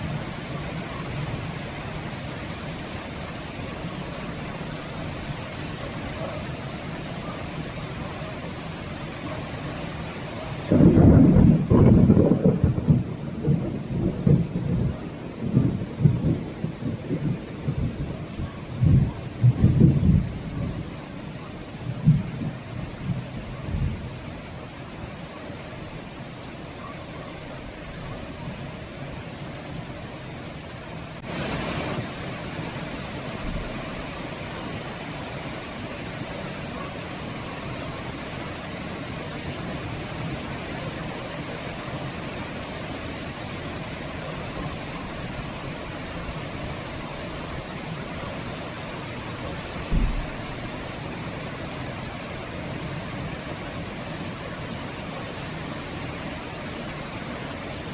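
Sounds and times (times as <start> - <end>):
rain falling: 0.0 - 57.9
low thump: 49.9 - 50.4.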